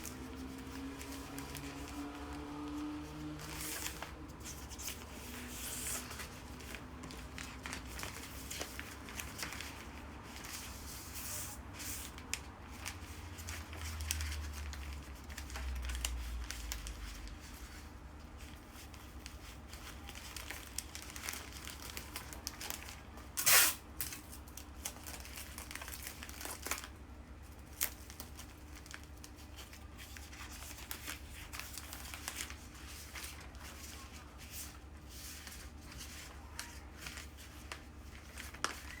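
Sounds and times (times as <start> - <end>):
wrapping material crinkling: 0.0 - 39.0
sharp tear: 23.4 - 23.8.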